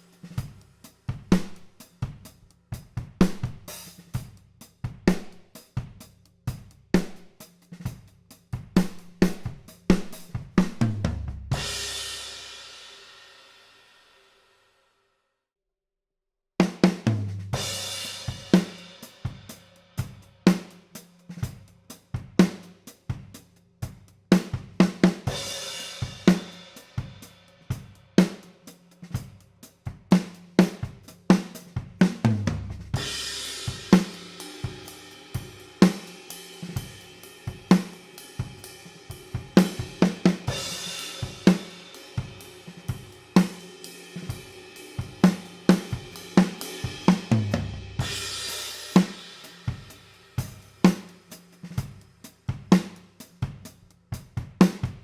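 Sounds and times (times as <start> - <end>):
hi-hat and cymbal wash: 33.1 - 53.6.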